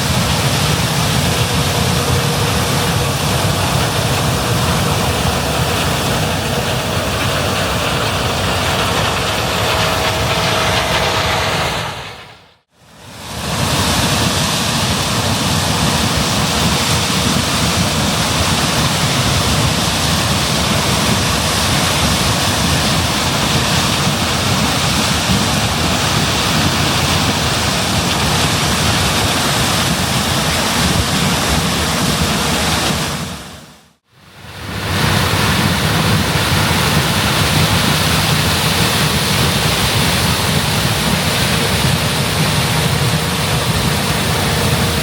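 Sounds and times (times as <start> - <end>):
combine harvester running: 0.0 - 45.0.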